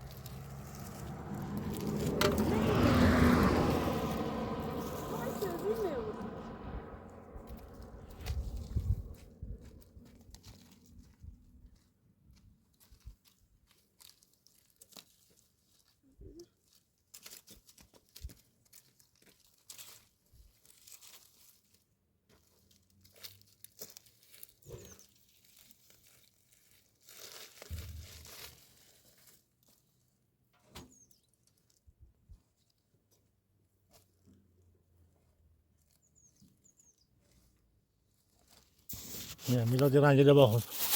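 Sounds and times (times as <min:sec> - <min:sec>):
rustling and crinkling handling noise: 0:00.0 - 0:03.1, 0:07.4 - 0:11.9, 0:12.6 - 0:34.4, 0:35.1 - 0:40.9.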